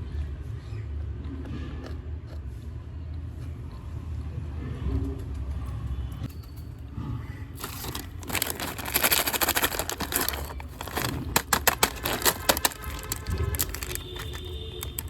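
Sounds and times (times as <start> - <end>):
sharp crackling clicks: 7.6 - 15.0
wrapper crinkling: 7.6 - 15.0.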